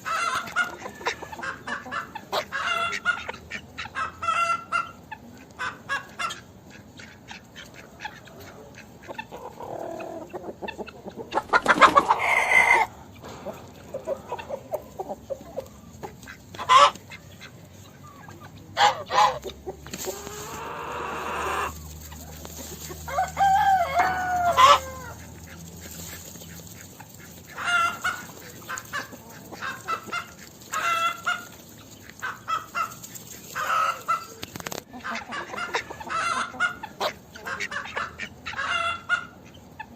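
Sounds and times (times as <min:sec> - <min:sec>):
chickens clucking and squawking: 0:00.0 - 0:39.9
rooster crowing: 0:23.0 - 0:25.2.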